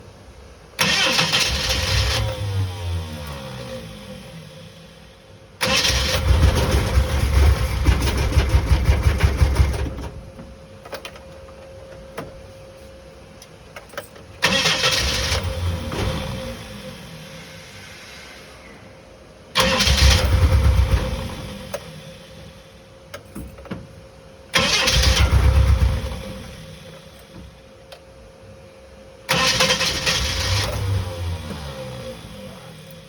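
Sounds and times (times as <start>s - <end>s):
van engine cranking by starter: 0.8s - 11.3s, 13.8s - 27.6s, 29.2s - 33.0s.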